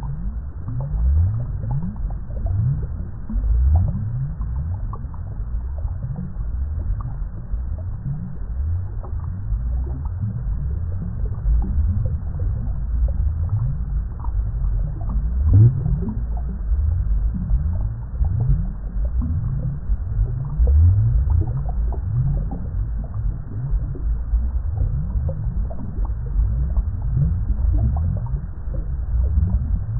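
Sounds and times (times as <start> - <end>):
water bubbling deep and low: 0.0 - 29.9.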